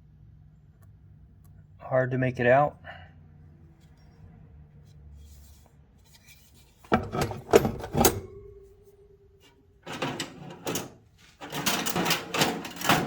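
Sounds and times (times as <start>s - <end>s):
metal tools clanking: 6.9s - 13.0s.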